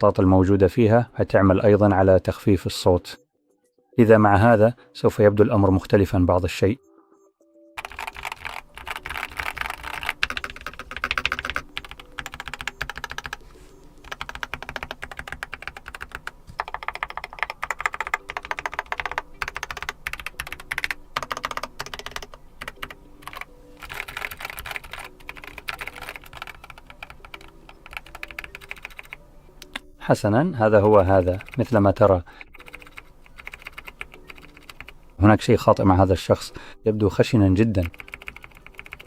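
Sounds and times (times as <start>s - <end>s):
fast keyboard typing: 7.8s - 29.2s, 30.6s - 35.0s, 37.6s - 39.0s.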